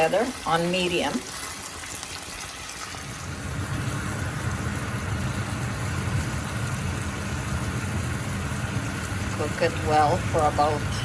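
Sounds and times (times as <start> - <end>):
chicken sizzling in a pan: 0.0 - 11.0.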